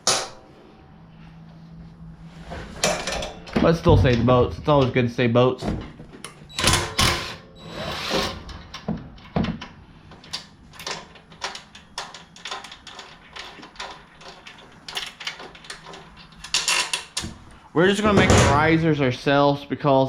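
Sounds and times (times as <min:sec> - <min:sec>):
bolts and tools clinking: 0:02.8 - 0:05.0, 0:05.6 - 0:17.4
metal scrape: 0:07.0 - 0:08.5.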